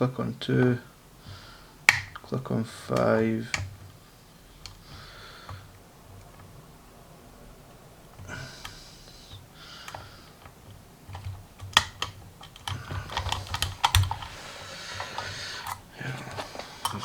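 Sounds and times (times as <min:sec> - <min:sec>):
lock pick metallic clicks: 0:01.8 - 0:02.3, 0:09.8 - 0:14.4, 0:15.0 - 0:17.0
soft rustles: 0:12.7 - 0:17.0.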